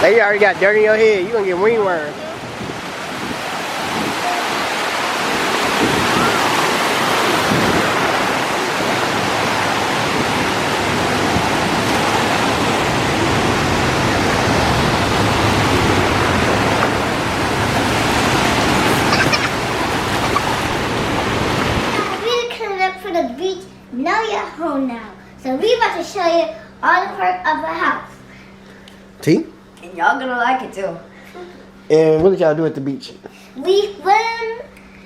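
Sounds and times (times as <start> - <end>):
rushing water: 0.0 - 22.5.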